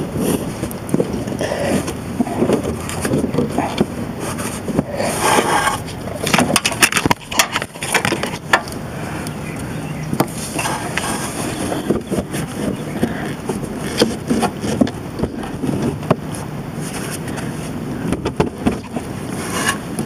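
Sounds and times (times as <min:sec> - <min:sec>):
cable scraping against metal: 0:00.2 - 0:09.3, 0:10.2 - 0:14.8, 0:18.7 - 0:20.0.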